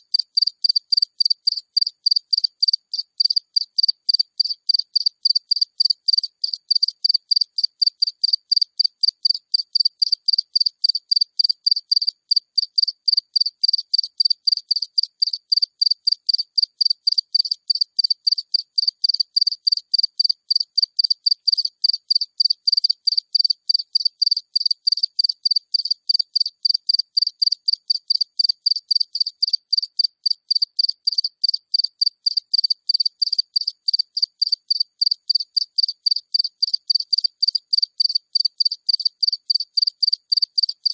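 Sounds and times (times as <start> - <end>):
cricket chirping: 0.0 - 40.9.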